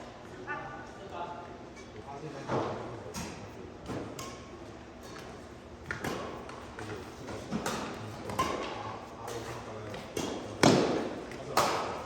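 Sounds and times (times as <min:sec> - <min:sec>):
rackets hitting shuttlecock: 0:10.0 - 0:12.0.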